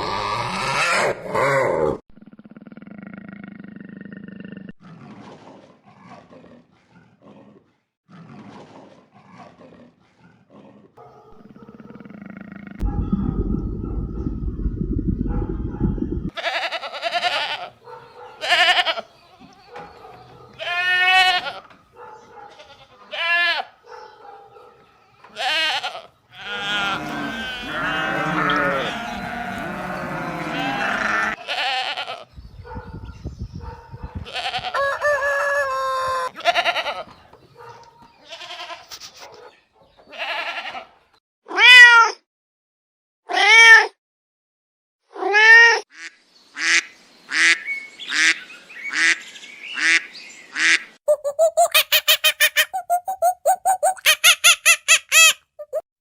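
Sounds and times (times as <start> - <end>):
goats bleating: 16.4 - 17.7, 20.6 - 21.6, 22.5 - 23.7, 25.4 - 32.2, 36.3 - 37.0, 38.2 - 38.9, 40.1 - 40.9.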